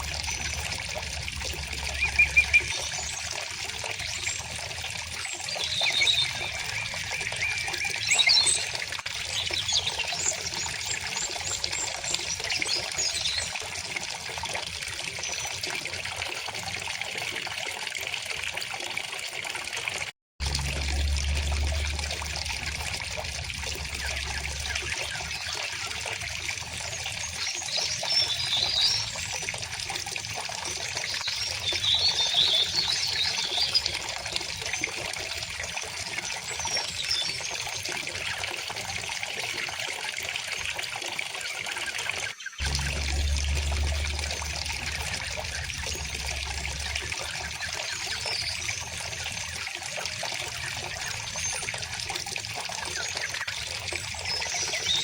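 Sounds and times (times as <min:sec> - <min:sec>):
small birds chirping: 0:00.0 - 0:04.6, 0:23.8 - 0:29.5
river water flowing: 0:00.0 - 0:14.4, 0:20.4 - 0:31.0, 0:42.6 - 0:55.0.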